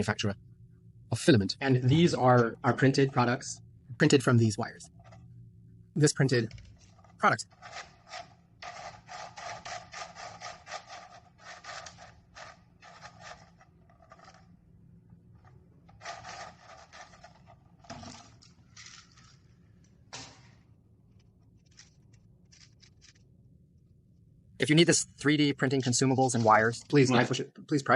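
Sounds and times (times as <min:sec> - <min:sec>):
hard plastic rubbing and scraping: 0:04.8 - 0:05.3, 0:06.4 - 0:23.3.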